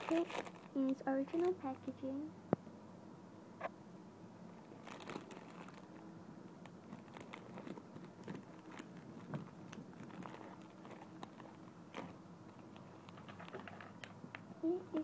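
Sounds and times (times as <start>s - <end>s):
plastic packaging crinkling: 0.0s - 1.8s, 4.6s - 14.4s.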